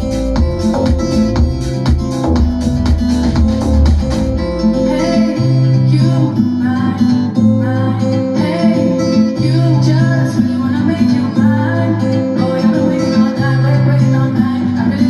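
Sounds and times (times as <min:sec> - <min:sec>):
guitar music through speaker: 0:00.0 - 0:15.0.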